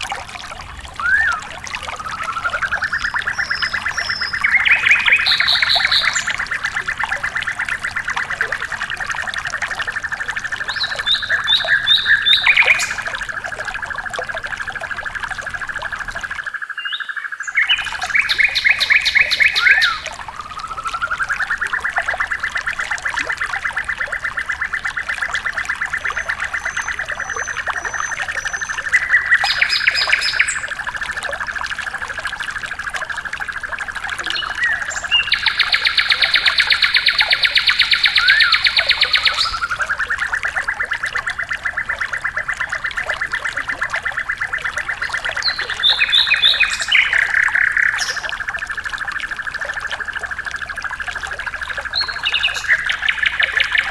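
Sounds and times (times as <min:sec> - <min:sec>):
bird trilling: 0:01.0 - 0:06.6, 0:16.8 - 0:20.1.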